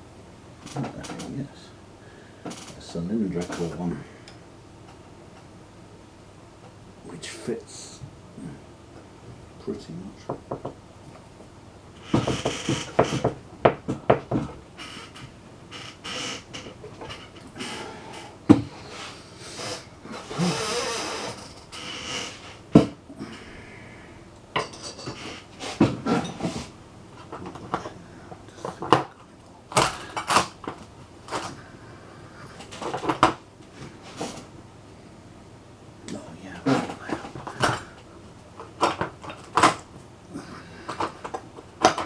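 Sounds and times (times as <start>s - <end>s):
metal tools clinking and clattering: 24.6s - 25.4s.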